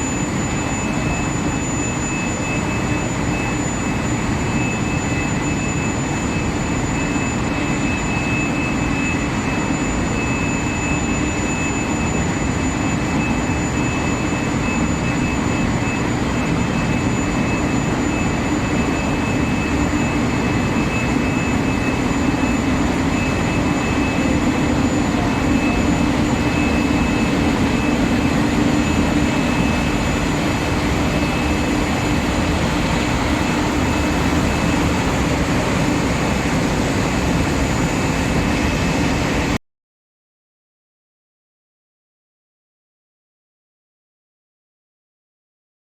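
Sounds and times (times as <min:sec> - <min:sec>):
constant industrial noise: 0:00.0 - 0:39.6
thin high-pitched whines: 0:07.3 - 0:38.9.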